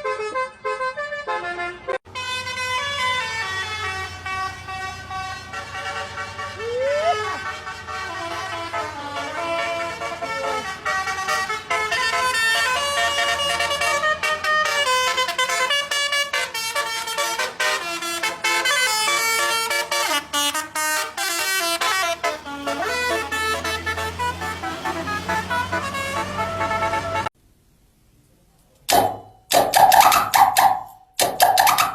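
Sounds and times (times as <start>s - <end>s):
musical vehicle horn playing tune: 0.0s - 27.3s.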